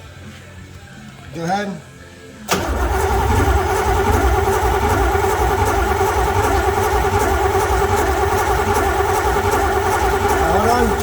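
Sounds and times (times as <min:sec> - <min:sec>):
engine starter cranking: 0:02.5 - 0:11.0.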